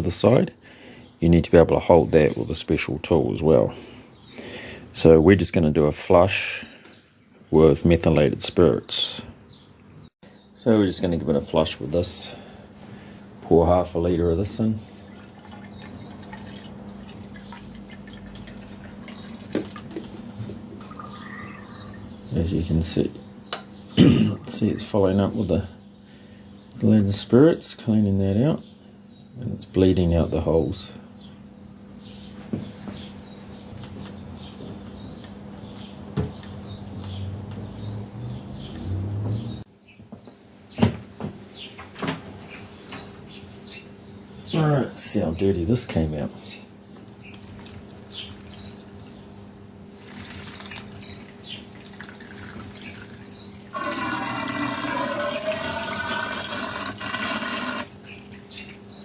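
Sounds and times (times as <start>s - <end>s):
small birds chirping: 0.0s - 59.0s
liquid trickling: 15.0s - 20.1s, 47.7s - 49.2s, 49.9s - 58.6s.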